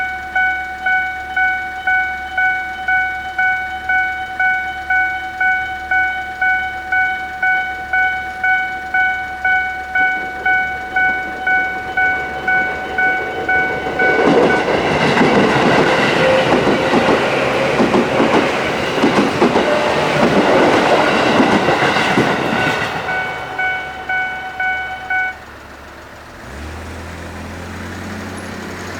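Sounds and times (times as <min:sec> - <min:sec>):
level crossing warning bell: 0:00.0 - 0:25.5
road vehicle engine hum: 0:00.0 - 0:28.9
train wheels clattering over rails: 0:08.2 - 0:25.1.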